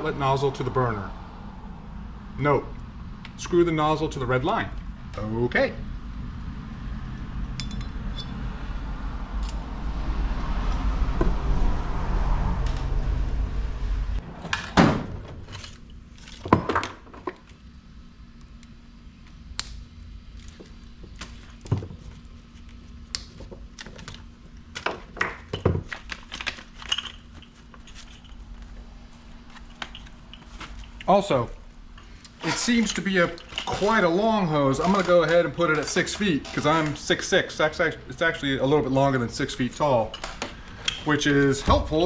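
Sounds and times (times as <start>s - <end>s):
low rumbling noise: 0.0s - 16.4s
metal parts knocking and clinking: 24.8s - 28.4s, 32.4s - 34.1s.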